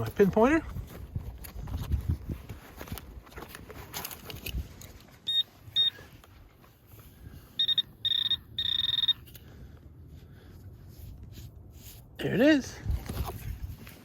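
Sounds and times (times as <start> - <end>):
metal detector pinpointer beeping: 5.2 - 6.1, 7.5 - 9.5.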